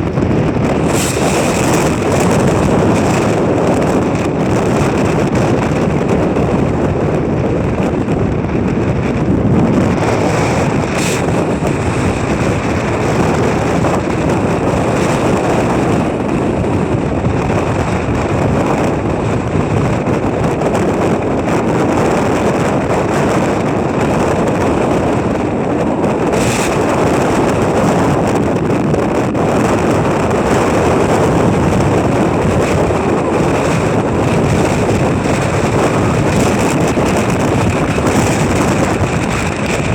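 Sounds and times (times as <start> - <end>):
gale buffeting microphone: 0.0 - 39.9
sharp crackles: 0.4 - 3.5.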